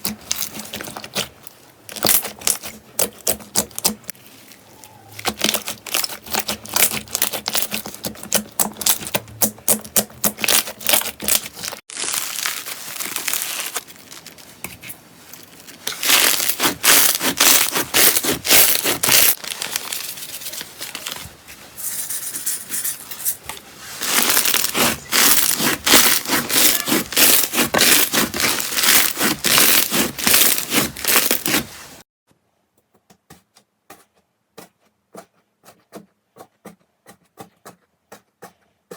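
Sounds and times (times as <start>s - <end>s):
slime crackling and popping: 5.2s - 14.4s, 15.8s - 20.0s, 24.0s - 31.6s.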